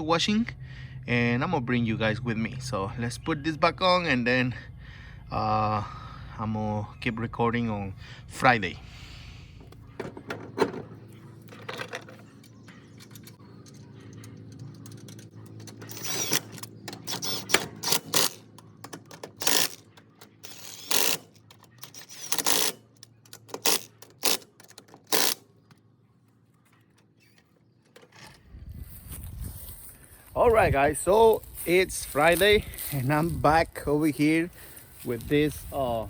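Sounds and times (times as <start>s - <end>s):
hand tools rattling on metal: 9.6s - 25.7s, 26.7s - 28.5s.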